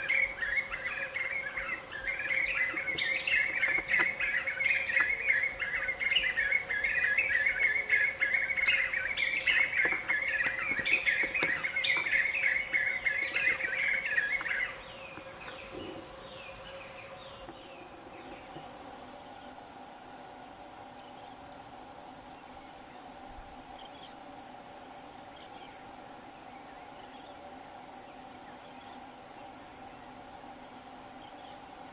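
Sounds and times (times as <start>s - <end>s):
birds calling in chorus: 0.0s - 19.5s
insect drone: 0.0s - 31.9s.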